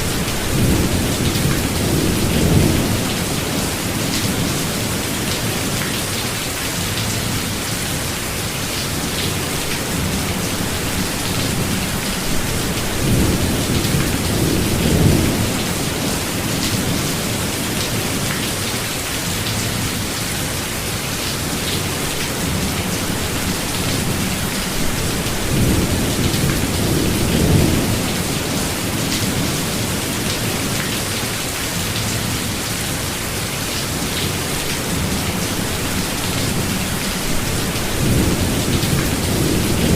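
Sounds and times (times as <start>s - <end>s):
steady rain in a forest: 0.0s - 39.9s
thunder rumbling: 10.6s - 17.3s, 22.6s - 30.0s.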